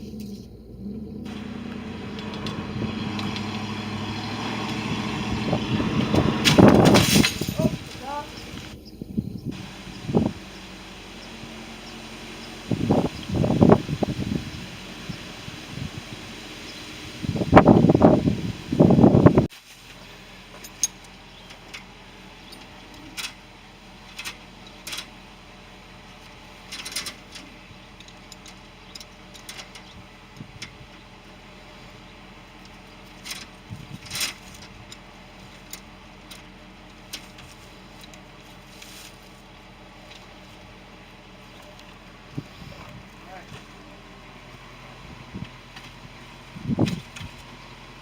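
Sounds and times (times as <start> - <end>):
light clicks and rattles: 26.1 - 31.1, 32.6 - 39.1.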